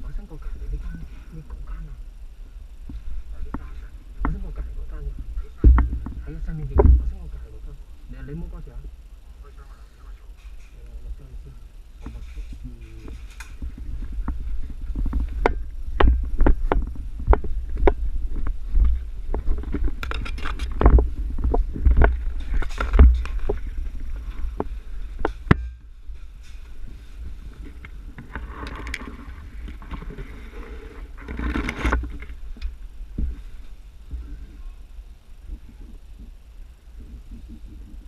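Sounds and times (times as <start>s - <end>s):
wind noise on microphone: 0.0s - 7.4s, 11.0s - 38.0s
rustling: 0.0s - 38.0s
footsteps: 12.0s - 34.6s.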